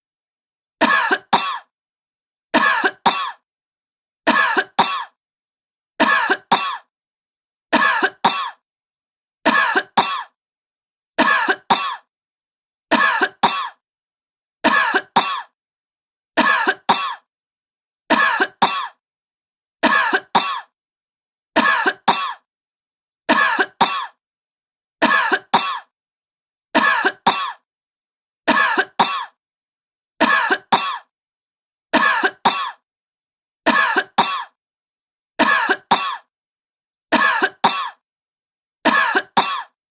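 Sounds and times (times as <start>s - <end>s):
woman coughing: 0.8s - 1.7s, 2.6s - 3.4s, 4.3s - 5.2s, 6.0s - 6.9s, 7.8s - 8.6s, 9.5s - 10.4s, 11.2s - 12.1s, 12.9s - 13.8s, 14.7s - 15.6s, 16.4s - 17.3s, 18.1s - 19.0s, 19.8s - 20.8s, 21.6s - 22.5s, 23.3s - 24.2s, 25.0s - 25.9s, 26.8s - 27.6s, 28.5s - 29.4s, 30.2s - 31.1s, 32.0s - 32.8s, 33.7s - 34.6s, 35.4s - 36.3s, 37.2s - 38.0s, 38.9s - 39.8s.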